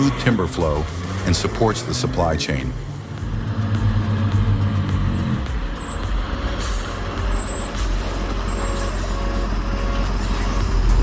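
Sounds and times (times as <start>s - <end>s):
heavy truck engine: 0.0s - 11.0s
brief high squeals: 5.8s - 9.5s.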